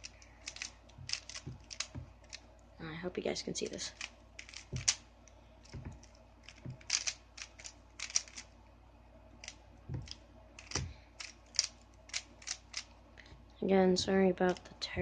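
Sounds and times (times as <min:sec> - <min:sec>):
plastic cube clicking: 0:00.1 - 0:02.4, 0:03.9 - 0:05.0, 0:05.6 - 0:08.5, 0:09.4 - 0:12.9.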